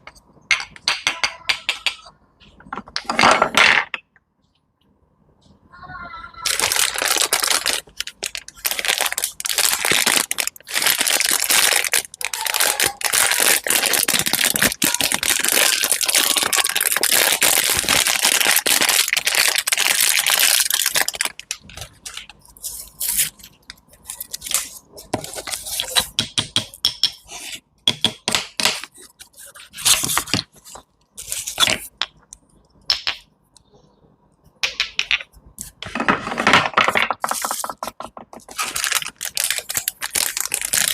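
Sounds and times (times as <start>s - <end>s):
crunching and crackling: 6.4s - 26.2s, 35.6s - 40.9s.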